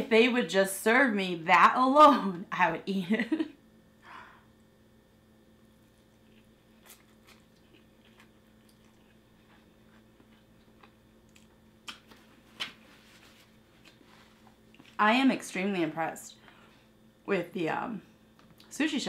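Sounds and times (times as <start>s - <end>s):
wet mouth clicks chewing: 6.1s - 12.1s.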